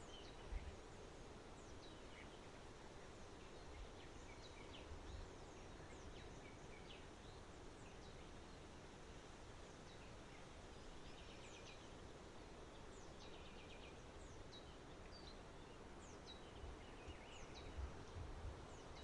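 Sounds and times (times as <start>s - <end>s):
songbirds chirping: 0.0s - 19.0s
steady background hiss: 0.0s - 19.0s.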